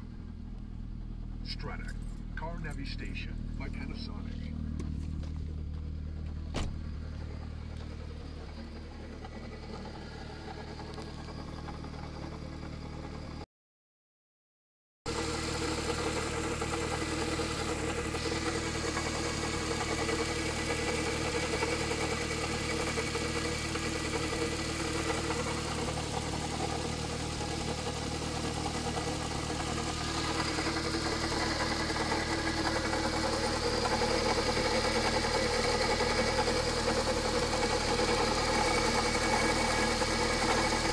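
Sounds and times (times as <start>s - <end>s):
car engine idling: 0.0s - 13.4s, 15.1s - 40.9s
rattling from engine bay: 15.2s - 40.9s.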